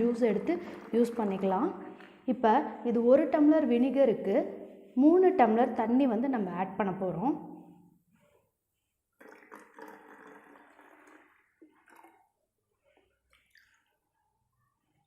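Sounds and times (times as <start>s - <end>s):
water pouring into spray bottle: 9.2s - 12.3s
faint drips and knocks: 9.2s - 14.2s.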